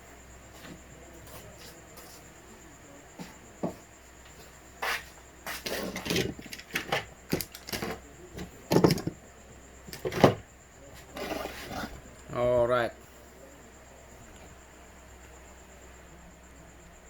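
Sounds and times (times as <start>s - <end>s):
objects set down on workbench: 4.9s - 9.2s, 9.9s - 10.4s
knocks and clatters: 5.7s - 9.2s.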